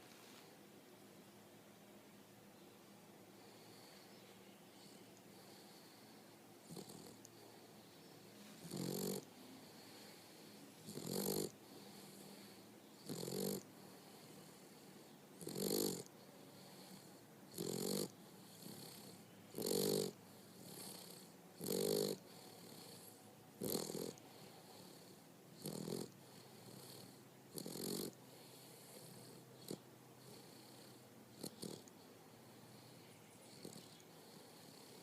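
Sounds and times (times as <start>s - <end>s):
dog snoring: 3.4s - 4.1s, 4.8s - 7.8s, 8.6s - 35.0s
dog breathing: 4.8s - 35.0s.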